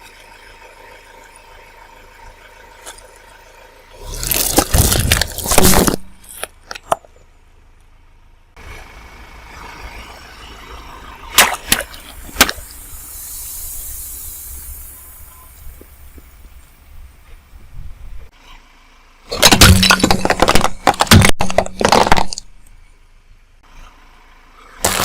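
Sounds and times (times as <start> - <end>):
objects crunching under car tyre: 3.9 - 7.3, 19.3 - 22.8
high hiss: 12.6 - 16.8.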